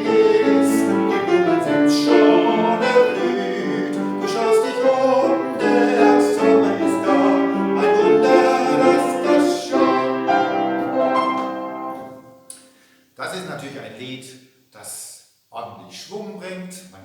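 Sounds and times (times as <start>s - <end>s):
piano melody: 0.0s - 12.5s.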